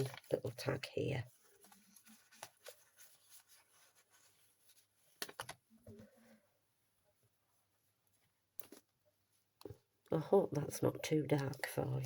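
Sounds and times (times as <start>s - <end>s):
paper rustling and tapping: 0.0s - 0.7s, 1.6s - 5.7s.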